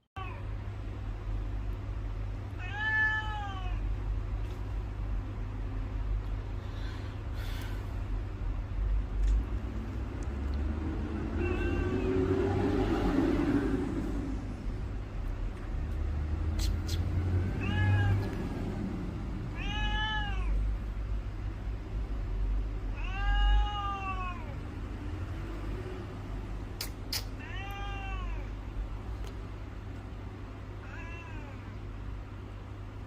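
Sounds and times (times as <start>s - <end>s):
cat meowing: 2.6s - 3.9s, 11.2s - 12.5s, 16.6s - 18.5s, 19.5s - 20.7s, 22.9s - 24.6s, 26.8s - 28.6s, 30.8s - 31.8s
low rumble: 7.2s - 22.9s.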